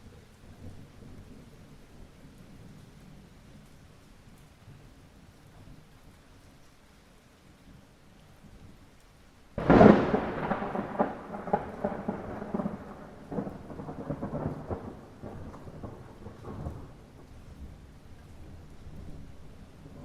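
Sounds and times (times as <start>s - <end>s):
rain hiss: 0.0s - 20.0s
thunder crack and rumble: 9.6s - 20.0s.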